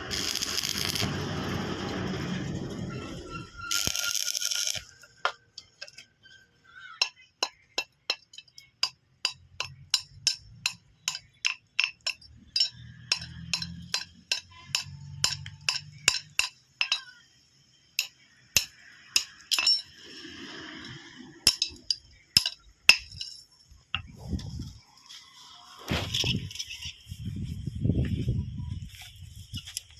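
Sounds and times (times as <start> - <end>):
hammer striking iron bar: 7.0 - 17.0.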